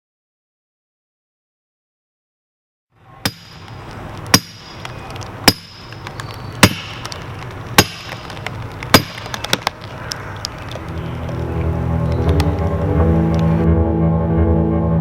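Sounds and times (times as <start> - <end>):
sledgehammer striking steel wedge: 3.2 - 6.0, 6.6 - 7.2, 7.8 - 9.5
steady low hum: 10.6 - 13.7.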